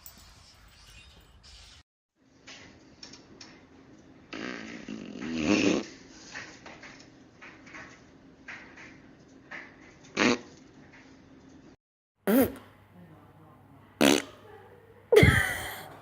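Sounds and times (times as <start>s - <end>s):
long rippling fart: 4.3s - 6.0s, 14.0s - 14.4s.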